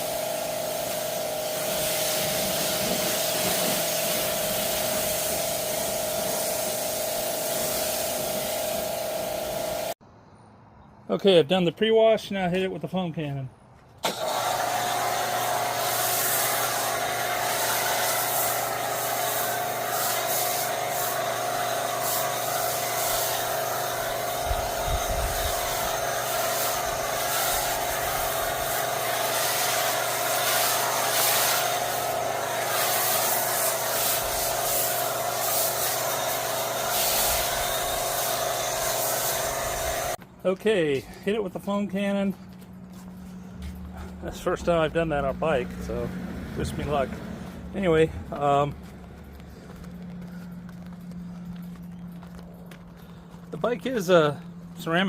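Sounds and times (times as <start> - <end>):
foam spraying hiss: 0.0 - 10.0, 14.1 - 40.2
pressure washer pump hum: 0.0 - 10.0, 14.0 - 55.0.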